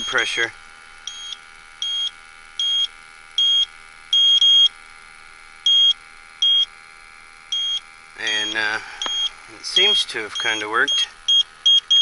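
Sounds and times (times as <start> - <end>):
steady hum: 0.0 - 12.0
short high beeps: 8.4 - 12.0.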